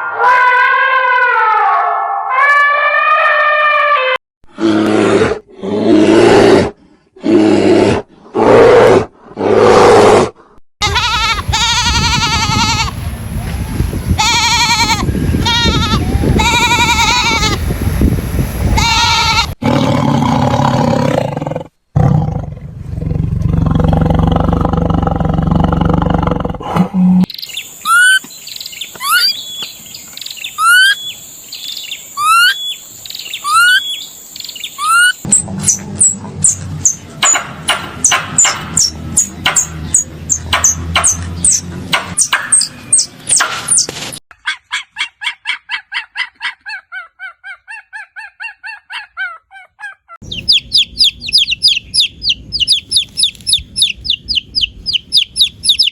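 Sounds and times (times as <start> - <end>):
animal low roar: 4.5 - 10.4, 19.6 - 27.3
wavering bleat-like call: 10.8 - 13.0, 14.2 - 17.6, 18.8 - 19.6
rising chirp: 27.3 - 43.9, 50.2 - 55.9.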